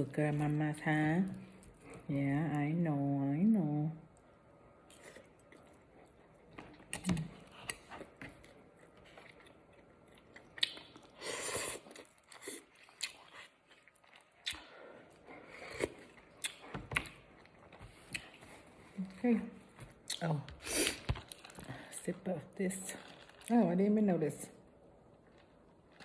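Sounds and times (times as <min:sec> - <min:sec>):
person chewing food: 0:04.2 - 0:18.9, 0:19.7 - 0:21.8, 0:25.1 - 0:26.0.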